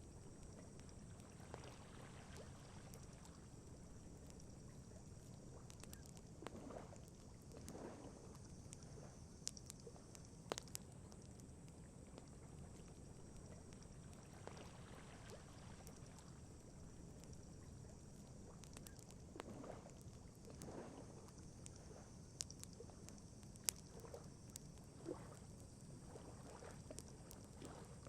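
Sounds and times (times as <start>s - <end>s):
campfire crackling and popping: 0.1s - 1.7s, 2.3s - 14.6s, 15.2s - 25.8s, 26.7s - 27.7s
lake water lapping: 1.3s - 3.4s, 6.4s - 8.2s, 14.2s - 18.6s, 19.3s - 22.1s, 26.0s - 28.0s.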